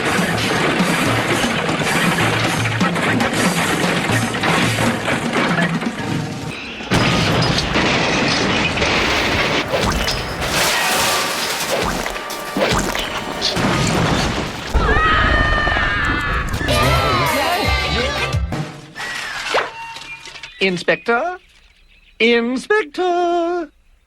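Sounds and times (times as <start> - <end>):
train crashing and smashing: 0.0 - 17.0
dramatic background music: 8.8 - 15.0.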